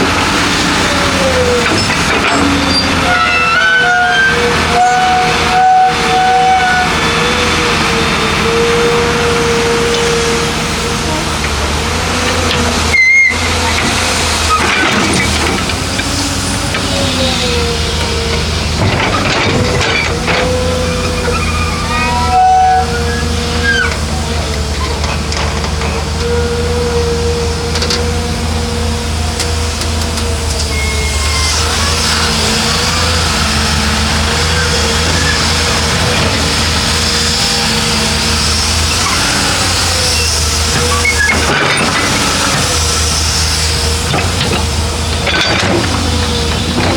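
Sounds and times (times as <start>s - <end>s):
heavy machinery diesel engine running: 0.0s - 46.9s
whining tones gliding: 19.7s - 25.2s.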